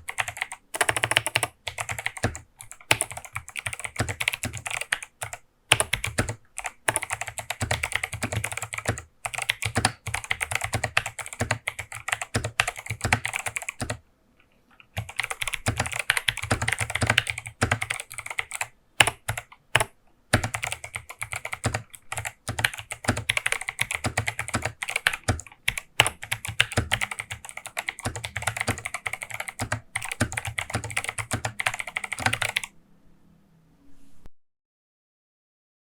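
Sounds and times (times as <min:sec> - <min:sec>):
clicky keyboard typing: 0:00.0 - 0:14.0, 0:14.8 - 0:32.7.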